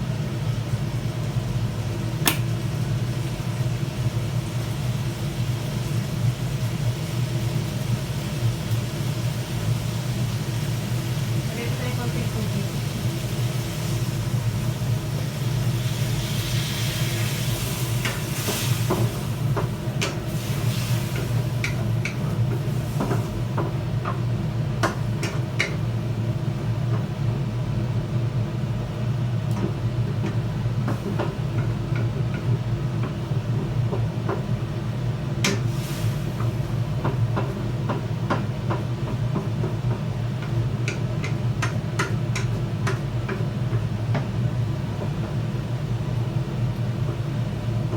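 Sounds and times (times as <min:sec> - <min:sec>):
food sizzling in a pan: 0:00.1 - 0:25.8, 0:35.5 - 0:37.8
spatula tapping a pan: 0:24.8 - 0:25.8, 0:29.5 - 0:34.5, 0:37.0 - 0:44.4.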